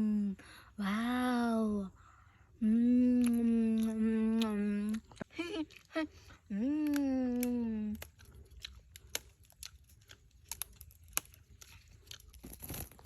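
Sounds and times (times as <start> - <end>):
person humming: 0.0 - 1.9, 2.6 - 8.1
material crackling and clicking: 10.5 - 13.0.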